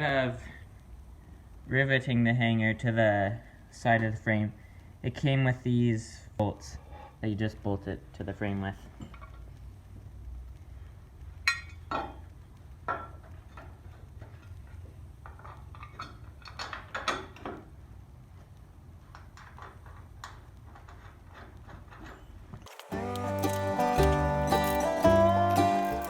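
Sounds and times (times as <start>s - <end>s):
metal parts clinking: 22.7s - 26.0s.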